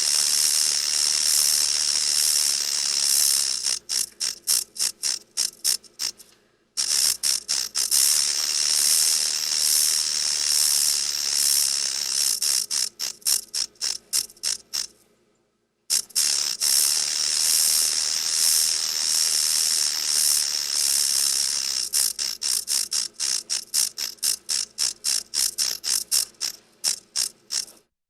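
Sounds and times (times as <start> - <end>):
rattlesnake tail rattling: 0.0 - 14.9, 15.9 - 27.9.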